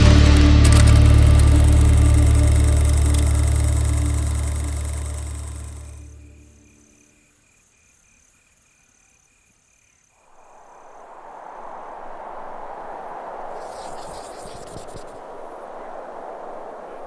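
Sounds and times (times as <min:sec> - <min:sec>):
music: 0:00.0 - 0:06.4
faint insect chirping: 0:00.8 - 0:17.0
steady rushing outdoor noise: 0:10.3 - 0:17.0.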